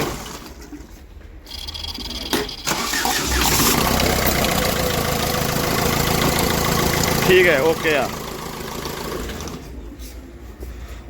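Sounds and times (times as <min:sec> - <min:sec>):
starter motor cranking: 0:01.5 - 0:09.7
diesel engine running: 0:01.5 - 0:09.9.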